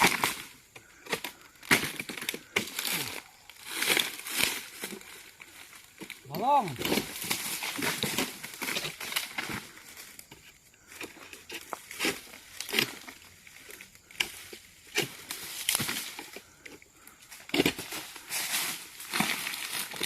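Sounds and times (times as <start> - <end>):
dry leaves and twigs rustling: 0.0 - 20.0.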